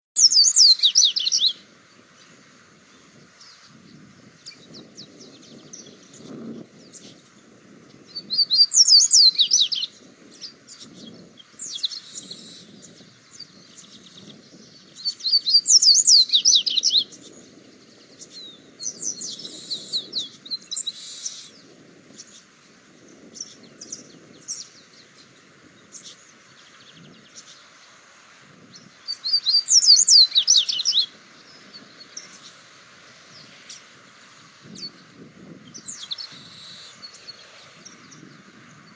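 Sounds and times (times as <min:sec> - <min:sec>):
songbird singing: 0:00.0 - 0:38.9
soft bird chirps and calls: 0:00.2 - 0:38.9.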